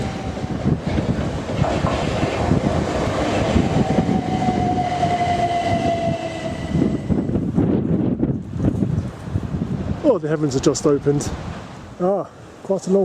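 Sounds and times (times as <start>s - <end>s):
train rumble and clatter: 0.0s - 10.0s
train whine falling in pitch: 1.6s - 7.4s.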